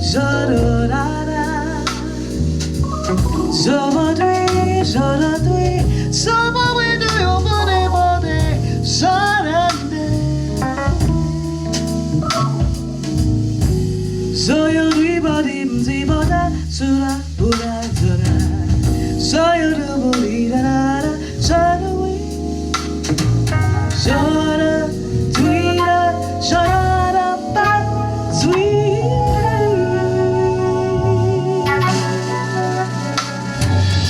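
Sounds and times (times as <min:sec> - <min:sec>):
woman singing soul vocal runs: 0:00.0 - 0:02.4, 0:03.0 - 0:10.7, 0:14.4 - 0:22.4, 0:24.0 - 0:34.0
band with guitar bass and drums: 0:00.0 - 0:34.0.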